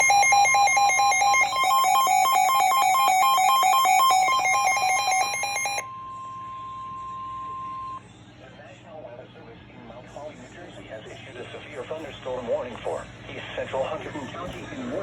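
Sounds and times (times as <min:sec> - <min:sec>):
steady warning alarm tone: 0:00.0 - 0:08.0
two-pitch electronic alarm beeping: 0:00.0 - 0:08.0.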